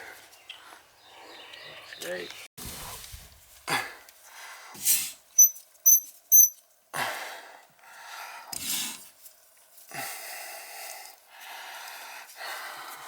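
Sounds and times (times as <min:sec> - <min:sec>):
short high chirps: 0:05.4 - 0:06.6.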